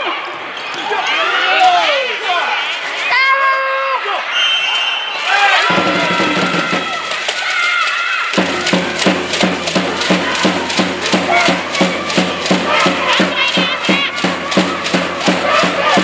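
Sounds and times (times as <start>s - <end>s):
crowd chanting: 5.6s - 7.3s, 8.4s - 16.0s
fast percussion beat: 5.7s - 7.6s, 8.3s - 16.0s.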